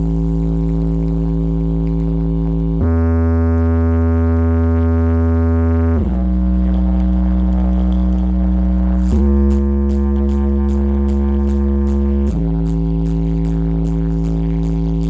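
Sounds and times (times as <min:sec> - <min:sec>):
held bass notes from subwoofers: 0:00.0 - 0:15.0
hi-hat ticks: 0:09.0 - 0:15.0.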